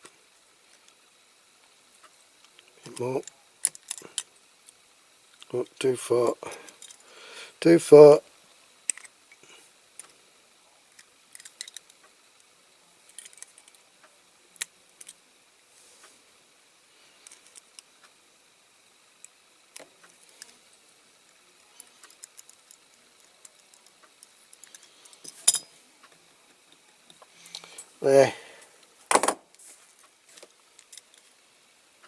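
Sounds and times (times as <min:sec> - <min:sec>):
metallic clicks of toy car: 0:08.9 - 0:09.2, 0:11.0 - 0:12.0, 0:13.1 - 0:13.8.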